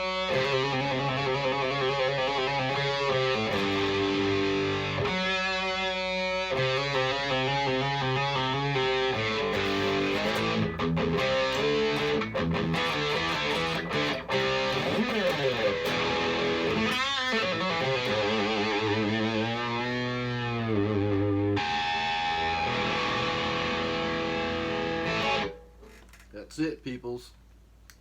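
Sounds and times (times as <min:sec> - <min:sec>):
electric guitar through an amp: 0:00.0 - 0:25.6.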